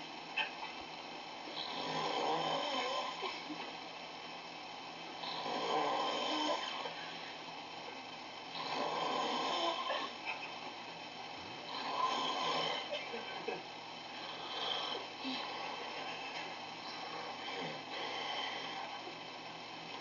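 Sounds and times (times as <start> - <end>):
man snoring: 1.5 - 3.3, 5.2 - 7.2, 8.5 - 10.2, 11.6 - 13.0, 14.1 - 16.2, 16.9 - 19.1.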